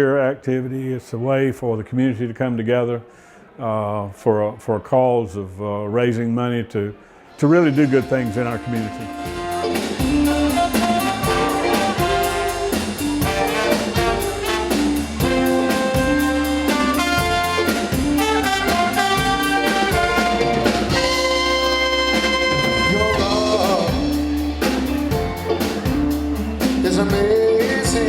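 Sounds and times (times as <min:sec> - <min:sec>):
horn section playing: 0:07.4 - 0:28.0
drum kit: 0:07.7 - 0:28.0.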